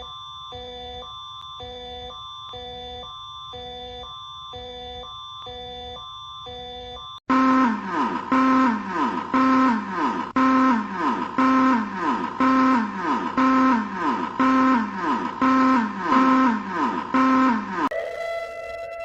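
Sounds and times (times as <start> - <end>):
electronic alarm tone sliding down: 0.0 - 19.0.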